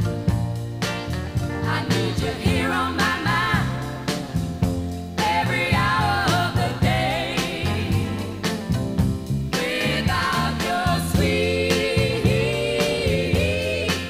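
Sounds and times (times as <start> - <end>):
song with singing over band: 0.8 - 14.0.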